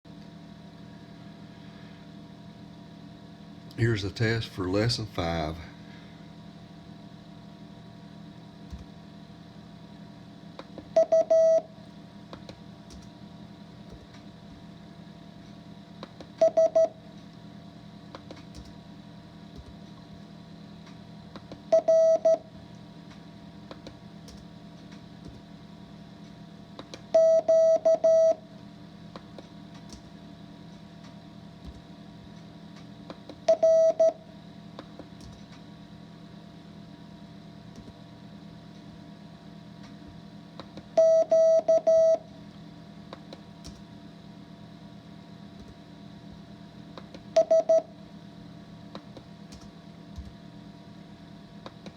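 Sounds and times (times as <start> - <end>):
steady low hum: 0.1 - 51.9
morse code beeps: 11.0 - 11.6, 16.4 - 16.9, 21.7 - 22.4, 27.2 - 28.4, 33.5 - 34.2, 41.0 - 42.2, 47.4 - 47.9.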